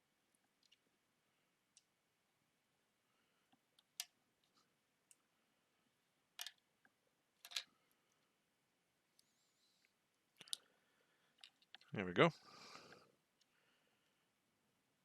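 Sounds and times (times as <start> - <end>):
plastic bricks clicking together: 6.4 - 6.7, 7.4 - 7.7.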